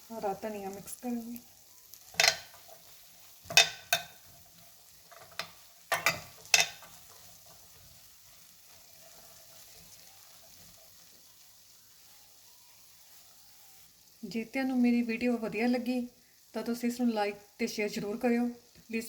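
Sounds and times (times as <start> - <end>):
curry sizzling: 0.0 - 19.0
spoon scraping a pan: 1.9 - 12.2.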